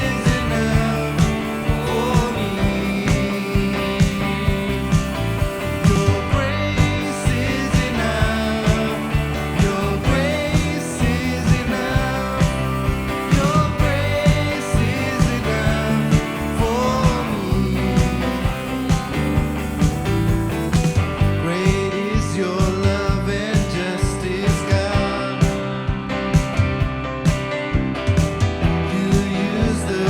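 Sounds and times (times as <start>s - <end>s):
worship song singing over instruments: 0.0s - 19.7s, 28.9s - 30.0s.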